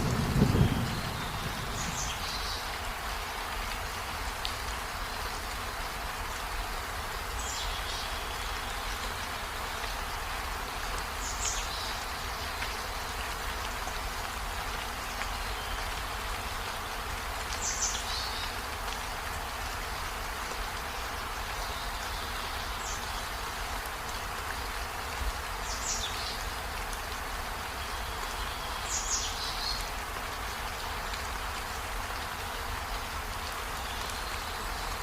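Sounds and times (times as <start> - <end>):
rain hissing: 0.0 - 35.0.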